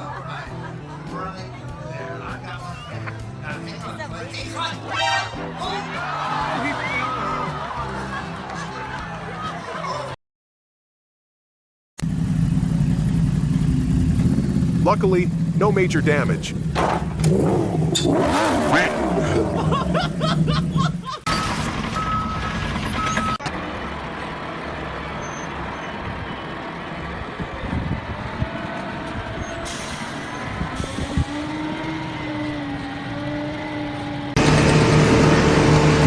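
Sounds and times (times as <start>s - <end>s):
short beeps: 21.3s - 23.4s
heavy machinery engine noise: 21.3s - 36.0s.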